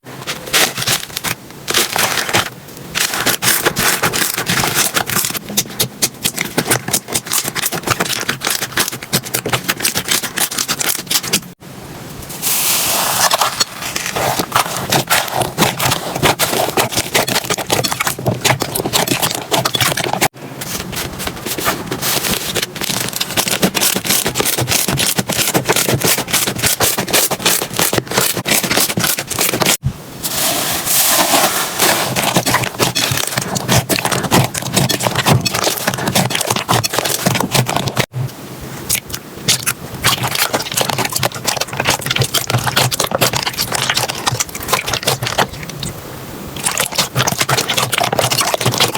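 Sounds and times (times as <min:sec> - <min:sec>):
slime crackling and popping: 0:00.5 - 0:11.5, 0:38.9 - 0:45.9.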